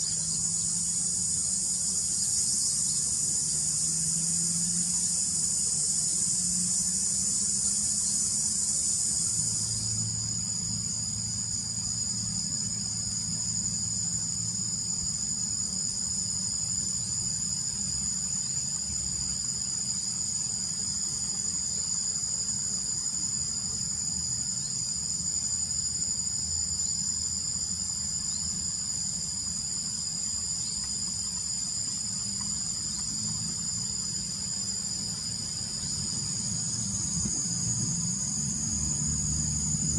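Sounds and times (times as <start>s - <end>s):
crickets trilling: 0.0s - 39.9s
dense high hiss: 0.0s - 39.9s.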